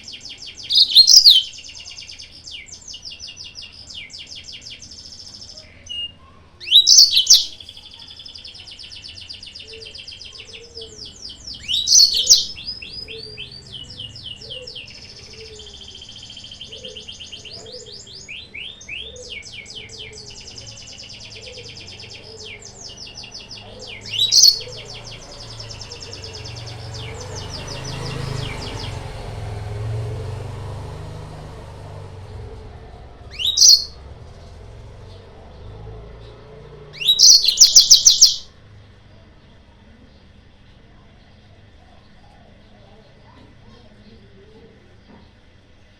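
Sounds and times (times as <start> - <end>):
canary trills and twitters: 0.0 - 29.2, 33.3 - 34.0, 37.0 - 38.5
sharp sweeping bird calls: 0.0 - 29.2, 33.3 - 34.0, 37.0 - 38.5.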